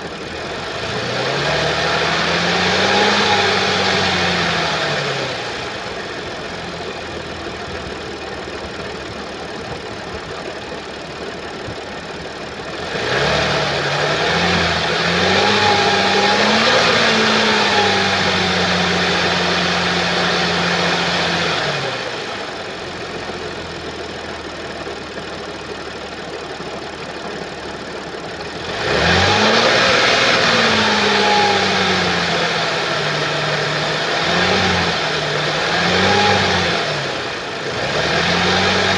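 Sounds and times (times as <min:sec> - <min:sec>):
car engine idling and revving: 0:00.0 - 0:38.9.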